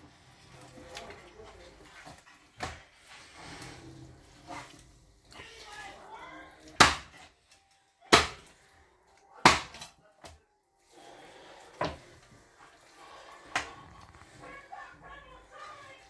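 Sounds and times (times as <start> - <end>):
knife chopping on wooden board: 6.8 - 7.2, 9.5 - 9.9.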